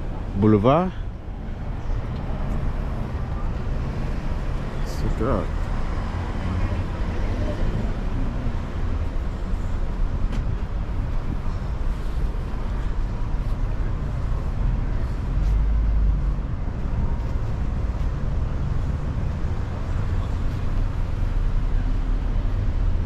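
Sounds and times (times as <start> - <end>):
city traffic rumble: 0.0 - 23.0.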